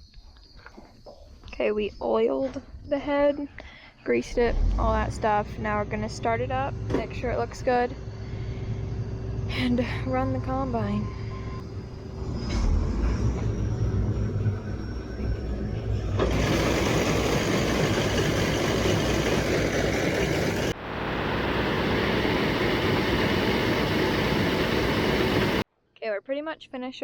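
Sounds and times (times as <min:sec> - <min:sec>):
combine harvester engine rumble: 0:04.1 - 0:25.6
rush of machinery noise: 0:04.4 - 0:25.6.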